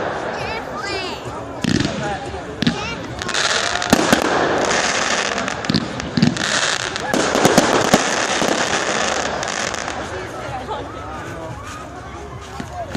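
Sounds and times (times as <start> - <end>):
fireworks sharp bangs: 0.0 - 10.2
fireworks crackling: 0.0 - 12.9.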